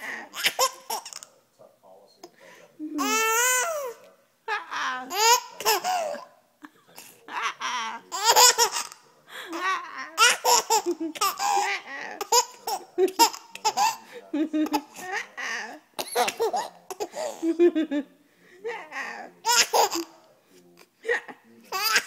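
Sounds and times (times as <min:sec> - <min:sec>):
baby laughing: 0:00.0 - 0:01.3, 0:03.0 - 0:06.3, 0:07.0 - 0:17.9, 0:18.8 - 0:20.2, 0:21.7 - 0:22.0
people laughing: 0:04.5 - 0:18.2.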